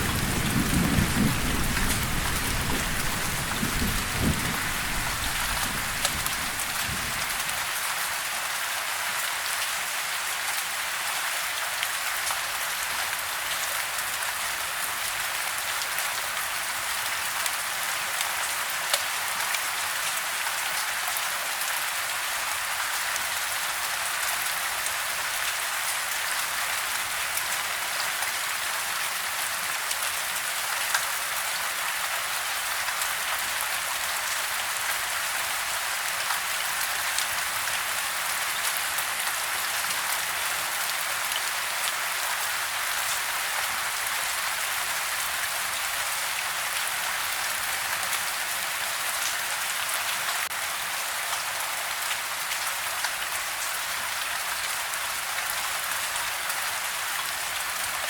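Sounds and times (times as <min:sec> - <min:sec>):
steady rain patter: 0:00.0 - 0:58.0
raindrops ticking: 0:00.1 - 0:07.5.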